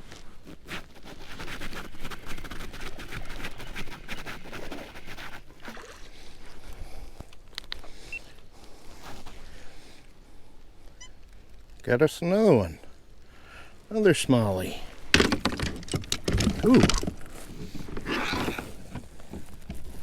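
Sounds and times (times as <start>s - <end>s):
water sloshing and splashing: 1.8s - 7.6s, 14.9s - 20.0s
knocks against kayak hull: 15.1s - 17.3s.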